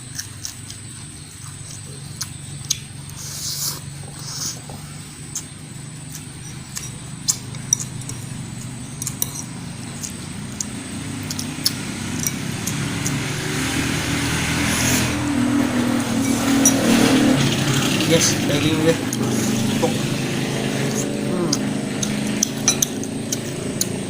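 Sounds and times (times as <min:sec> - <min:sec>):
clicks and smacks of eating: 0:00.0 - 0:13.2, 0:21.5 - 0:24.0
motor vehicle engine hum: 0:00.0 - 0:24.0.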